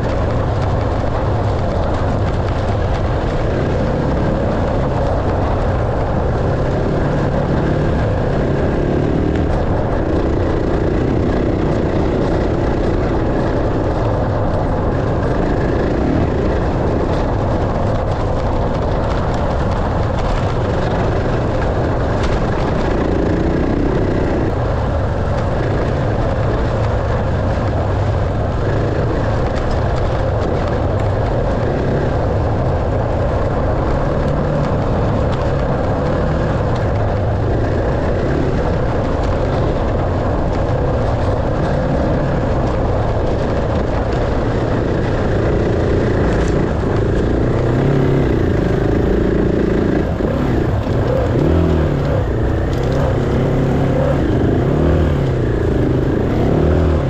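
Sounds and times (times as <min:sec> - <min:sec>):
dirt bike engine revving: 0:03.0 - 0:14.0, 0:41.5 - 0:57.0.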